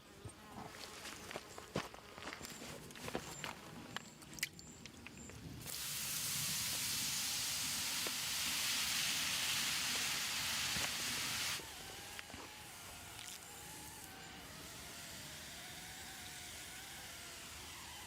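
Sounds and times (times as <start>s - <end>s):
food sizzling in a pan: 5.7s - 11.6s.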